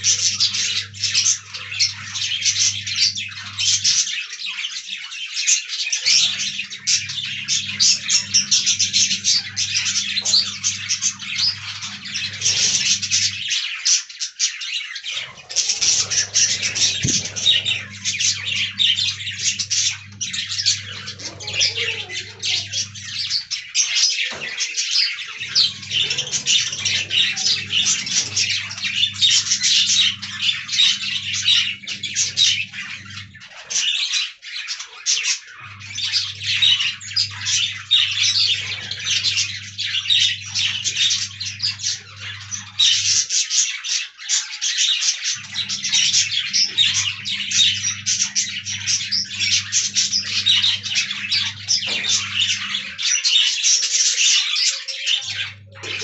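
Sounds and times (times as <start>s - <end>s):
budgerigars chattering and chirping: 0.0s - 56.0s
steady low hum: 6.1s - 13.6s, 15.2s - 24.6s, 25.2s - 33.6s, 35.6s - 43.3s, 45.2s - 53.1s.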